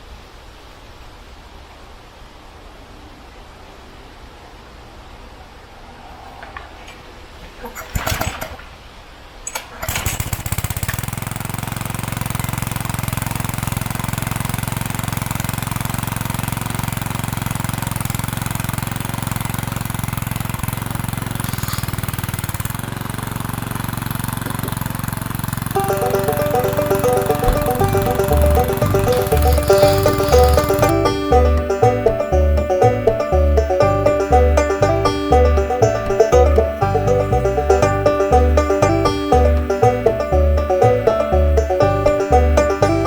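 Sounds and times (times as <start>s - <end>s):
starter cord pulls: 7.6s - 8.6s, 9.5s - 11.2s, 21.2s - 32.2s
small engine running: 9.8s - 43.0s.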